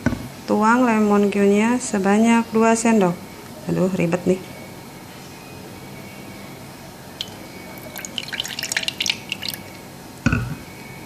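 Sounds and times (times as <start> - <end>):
liquid dripping and splashing: 7.2 - 9.8.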